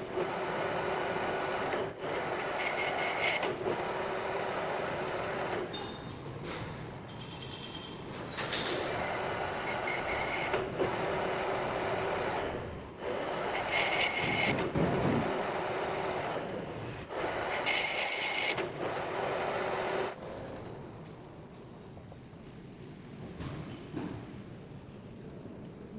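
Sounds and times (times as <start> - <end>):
metal lathe humming: 8.8 - 20.2.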